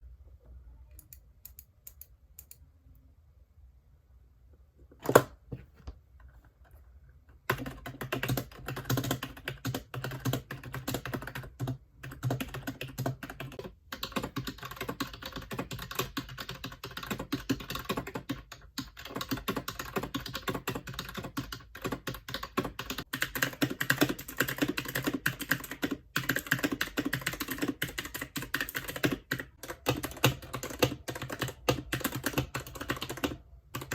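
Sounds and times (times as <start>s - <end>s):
typing on computer keyboard: 7.5s - 33.9s.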